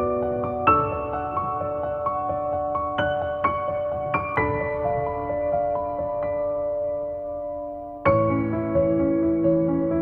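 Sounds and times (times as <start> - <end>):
gentle new-age music: 0.0 - 10.0.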